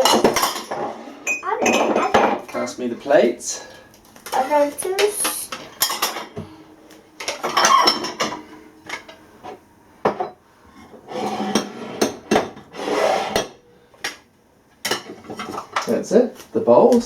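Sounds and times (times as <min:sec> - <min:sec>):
ceramic dishes clinking: 0:00.0 - 0:02.7, 0:05.0 - 0:06.5, 0:07.2 - 0:09.2
dishes scraping: 0:00.0 - 0:03.2, 0:04.3 - 0:13.8, 0:14.8 - 0:15.9.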